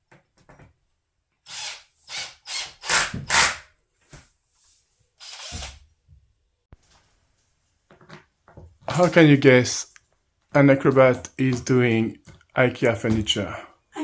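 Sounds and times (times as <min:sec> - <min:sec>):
power drill driving screws: 0:01.5 - 0:03.7, 0:05.2 - 0:05.8.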